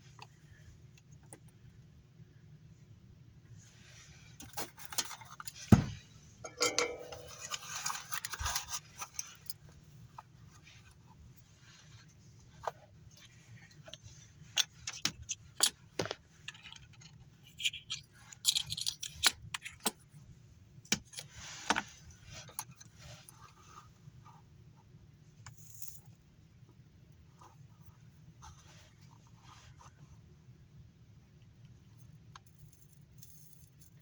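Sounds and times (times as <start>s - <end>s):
small metal parts and tools clinking: 6.4s - 9.4s, 16.4s - 19.9s.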